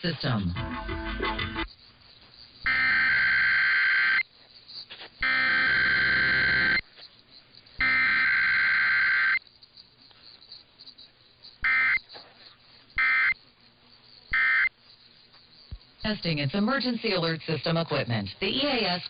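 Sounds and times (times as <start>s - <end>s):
raspy warbling data tone bursts: 2.6s - 4.2s, 5.2s - 6.8s, 11.6s - 12.1s, 13.0s - 13.4s, 14.3s - 14.8s.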